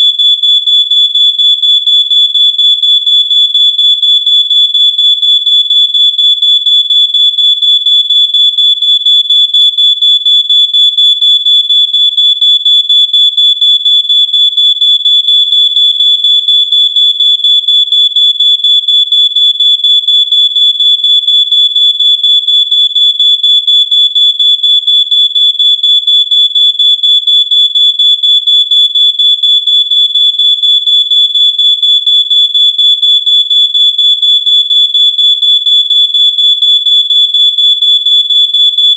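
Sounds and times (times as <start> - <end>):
smoke alarm beeping: 7.9 - 12.0.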